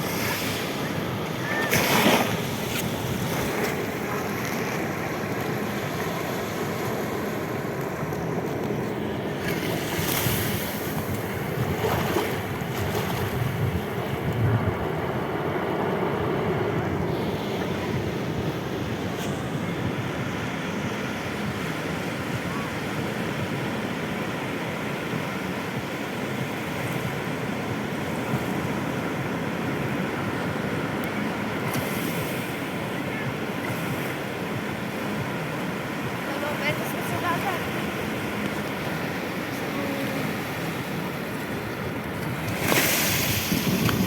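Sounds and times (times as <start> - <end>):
waves rushing: 0.0 - 44.0
wind on microphone: 0.0 - 44.0.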